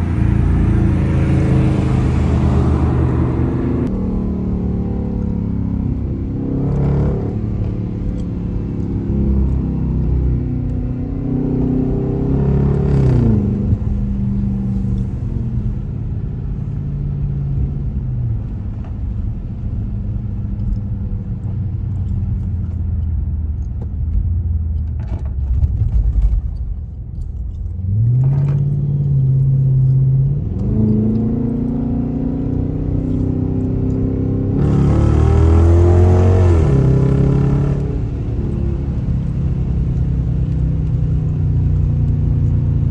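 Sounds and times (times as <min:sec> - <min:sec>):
car engine revving through gears: 0:00.0 - 0:15.8, 0:27.7 - 0:42.9.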